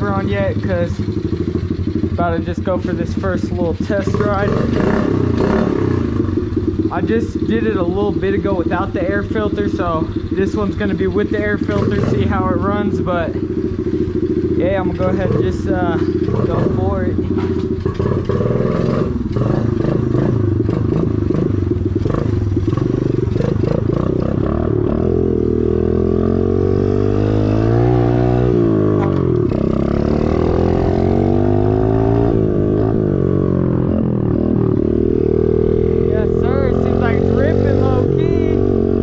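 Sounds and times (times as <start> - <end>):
motorbike engine revving: 0.0 - 39.0.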